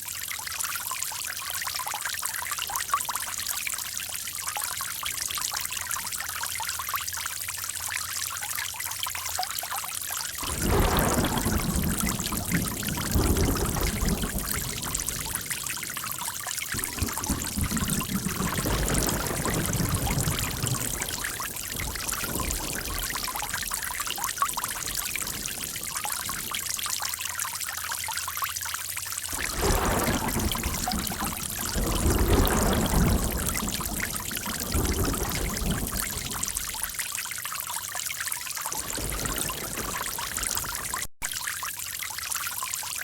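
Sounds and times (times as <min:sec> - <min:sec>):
running water splashing: 0:10.0 - 0:42.0.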